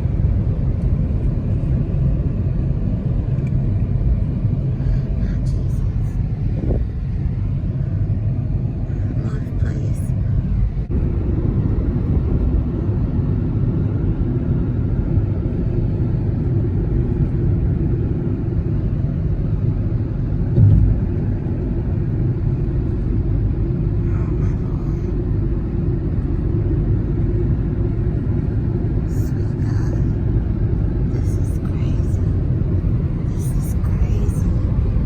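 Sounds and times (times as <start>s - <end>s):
car road and engine rumble: 0.0s - 35.0s
heavy low thump: 20.5s - 21.4s.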